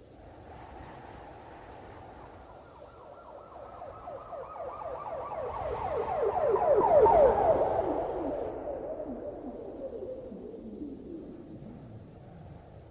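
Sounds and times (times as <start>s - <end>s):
police siren wailing: 2.6s - 11.7s.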